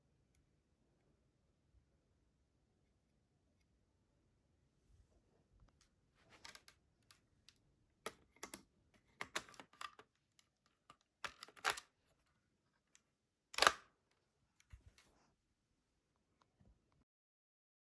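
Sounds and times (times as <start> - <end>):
plastic pieces clicking and rattling: 9.2 - 10.1, 10.9 - 11.8.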